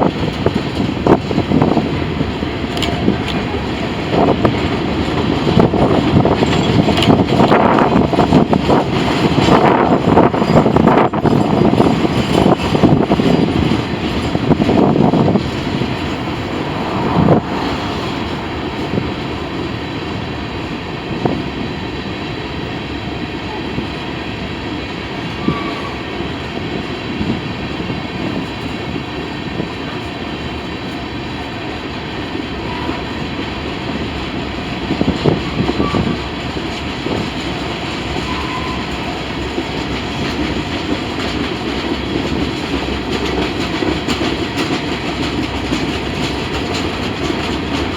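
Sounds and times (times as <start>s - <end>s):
train wheels rumbling on rails: 0.0s - 47.9s
clicking over rail joints: 0.1s - 16.4s, 33.7s - 47.9s.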